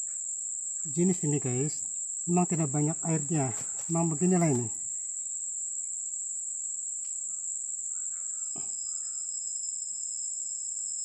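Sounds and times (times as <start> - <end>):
insects droning: 0.0 - 11.0
faint chirps: 7.0 - 11.0.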